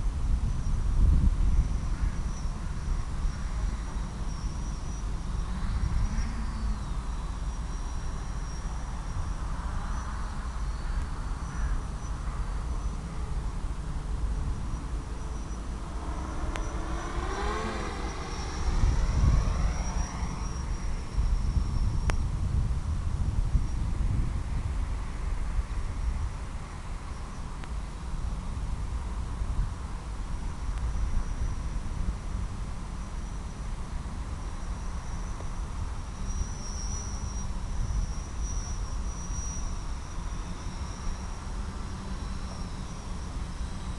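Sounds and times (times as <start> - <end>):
heavy wind rush: 8.9 - 32.7
small electric motor running: 14.7 - 22.5.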